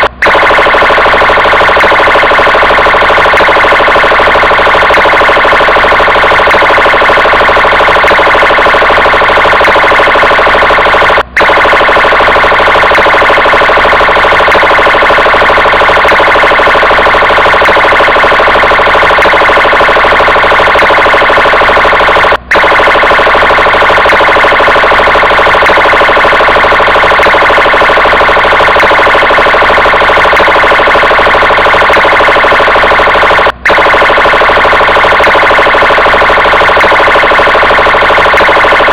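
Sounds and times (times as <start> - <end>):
police car siren: 0.0 - 38.9.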